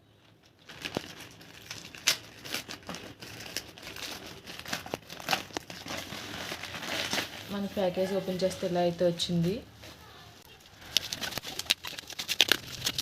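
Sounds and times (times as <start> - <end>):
packaging tearing and crinkling: 0.5 - 7.8, 10.8 - 13.0.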